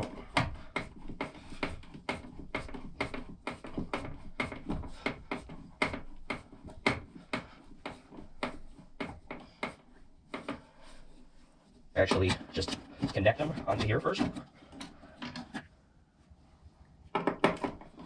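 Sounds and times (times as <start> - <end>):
plastic clicks and knocks: 17.1 - 18.0.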